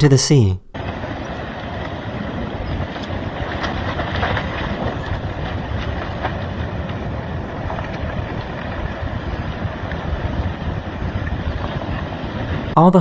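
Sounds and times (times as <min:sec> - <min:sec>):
landslide rumbling: 0:00.8 - 0:13.0
cracks and snaps: 0:01.7 - 0:10.1.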